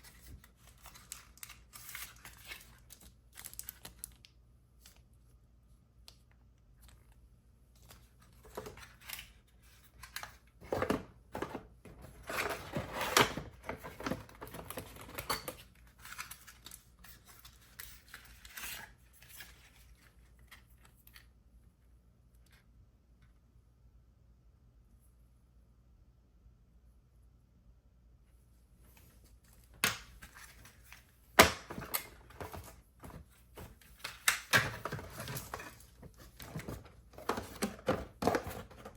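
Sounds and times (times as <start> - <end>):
packaging rustling and knocking: 31.4 - 38.9.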